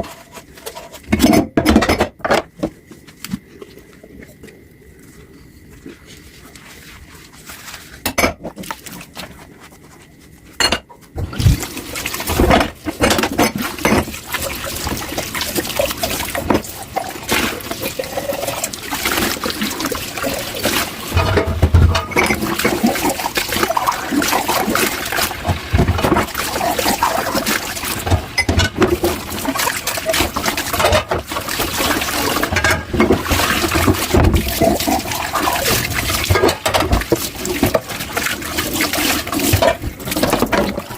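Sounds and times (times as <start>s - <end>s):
dishes clinking: 8.1s - 8.5s, 10.6s - 11.0s, 21.1s - 22.9s, 28.2s - 28.9s
tap water running into sink: 11.3s - 40.9s.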